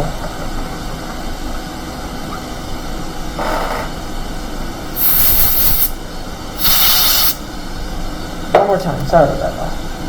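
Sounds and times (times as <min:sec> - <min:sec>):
spray can hissing: 0:05.0 - 0:06.0, 0:06.6 - 0:07.4.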